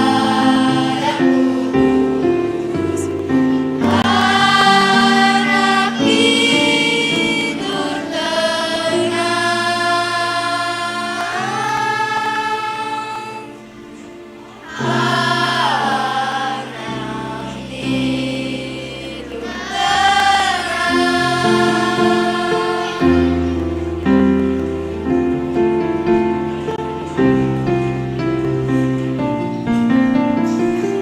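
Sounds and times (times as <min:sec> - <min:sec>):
children's choir singing: 0:00.0 - 0:31.0.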